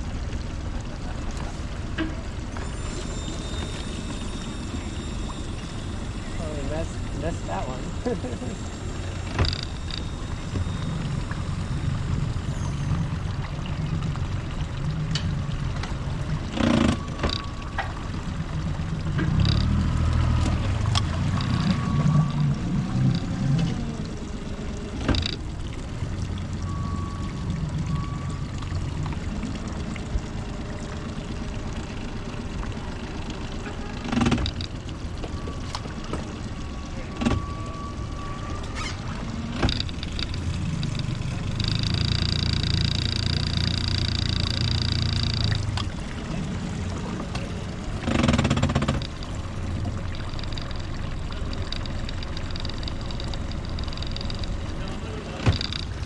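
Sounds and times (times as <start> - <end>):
boat engine rumble: 0.0 - 56.0
water noise: 0.0 - 56.0
steady high-pitched tone: 2.0 - 15.0, 35.0 - 56.0.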